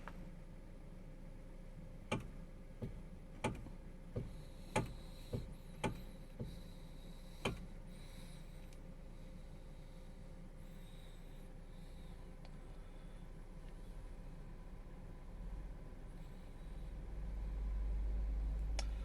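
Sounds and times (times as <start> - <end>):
steering column clicking: 2.1 - 6.6, 7.4 - 7.7.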